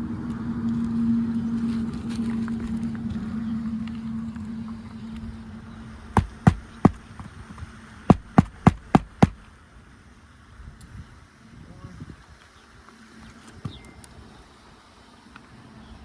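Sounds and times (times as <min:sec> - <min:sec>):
low hum: 0:00.0 - 0:09.7
hammer driving nails: 0:06.2 - 0:09.4.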